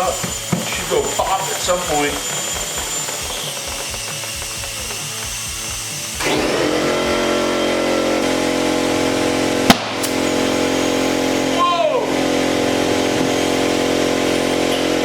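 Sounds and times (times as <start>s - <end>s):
air compressor motor humming: 0.0s - 15.0s
tire bead popping onto rim: 9.7s - 10.3s.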